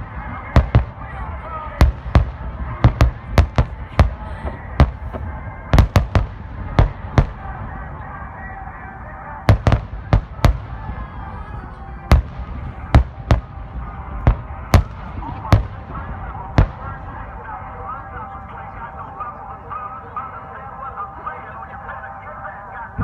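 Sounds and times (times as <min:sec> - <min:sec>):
fireworks bangs: 0:00.0 - 0:08.2, 0:09.4 - 0:17.4.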